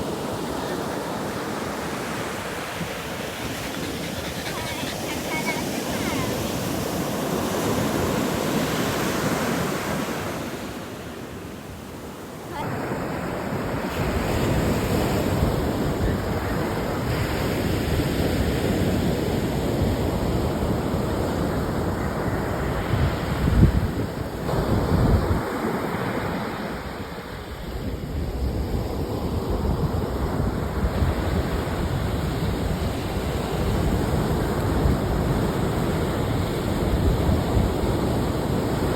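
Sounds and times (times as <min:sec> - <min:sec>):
ocean surf on beach: 0:00.0 - 0:38.9.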